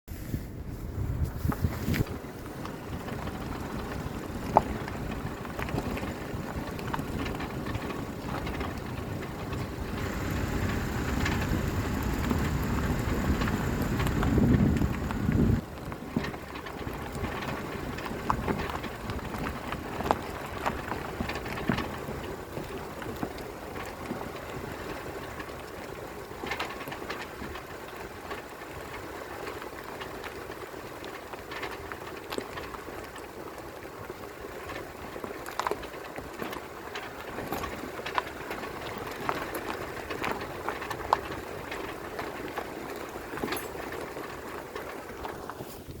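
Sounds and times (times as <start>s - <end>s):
car road noise: 0.4s - 21.5s
suspension knocks: 3.0s - 16.4s.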